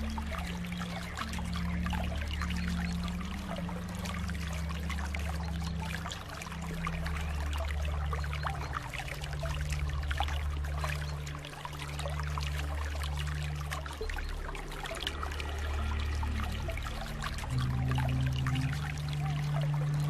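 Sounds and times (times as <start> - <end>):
water trickling and splashing: 0.0 - 20.0
steady low rumble: 12.1 - 20.0.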